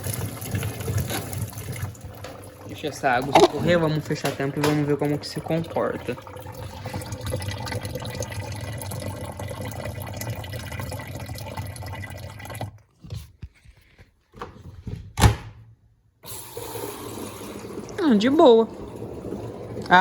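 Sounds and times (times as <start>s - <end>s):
washing machine water running: 0.0s - 12.8s, 16.2s - 20.0s
washer lid shutting knock: 3.3s - 4.8s.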